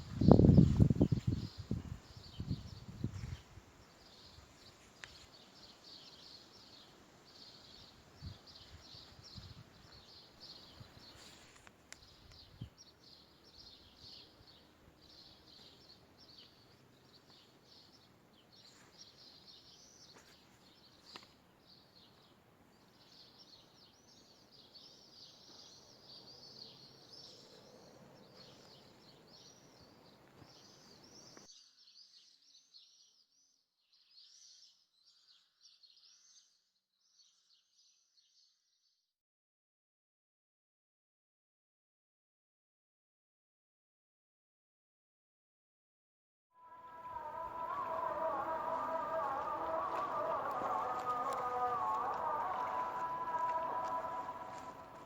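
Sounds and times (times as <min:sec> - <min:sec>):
small birds chirping: 0:00.0 - 0:36.5.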